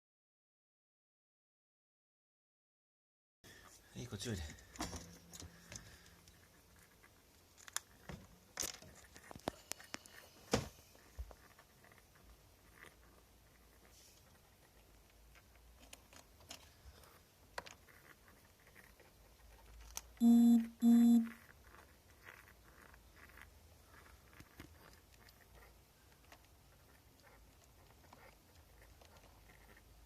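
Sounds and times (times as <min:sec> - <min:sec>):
short electronic beeps: 0:20.2 - 0:21.3.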